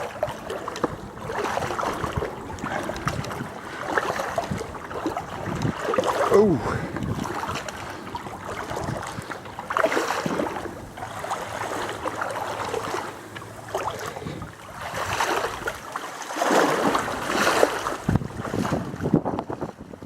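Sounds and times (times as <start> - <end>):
water sloshing around wading person: 0.0 - 20.0.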